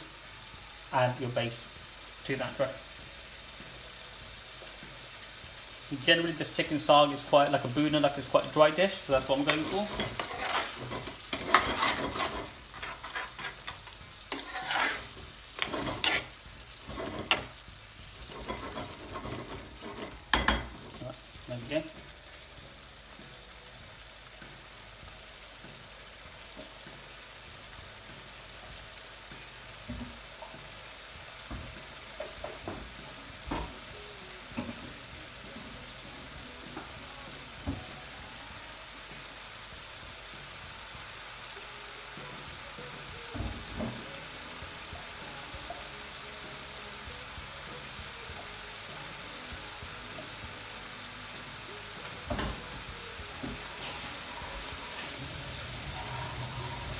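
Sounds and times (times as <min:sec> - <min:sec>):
curry sizzling in a pan: 0:00.0 - 0:56.9
utensil knocking against pan: 0:18.3 - 0:21.0.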